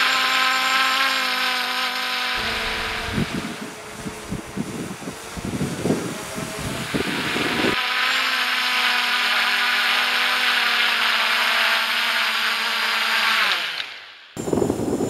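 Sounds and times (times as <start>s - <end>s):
drone propellers whirring: 0.2s - 9.2s.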